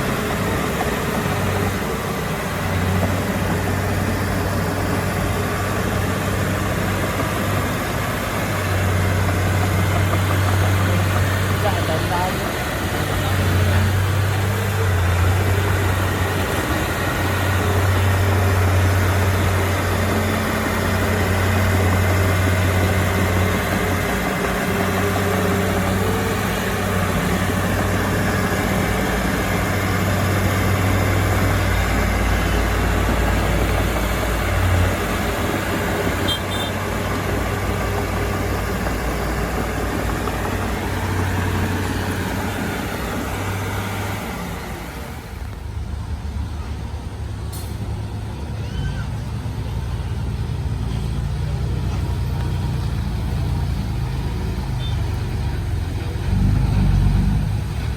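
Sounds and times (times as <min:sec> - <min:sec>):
bulldozer diesel engine droning: 0:00.0 - 0:57.9.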